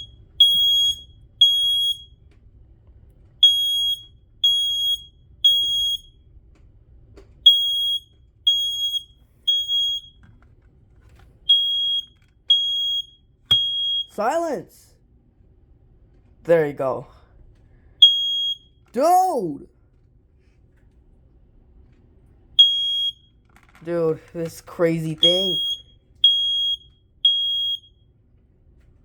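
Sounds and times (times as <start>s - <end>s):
smoke alarm beeping: 0.0s - 2.3s, 3.4s - 6.3s, 7.4s - 10.2s, 11.5s - 14.6s, 18.0s - 19.4s, 22.6s - 23.4s, 25.0s - 28.1s.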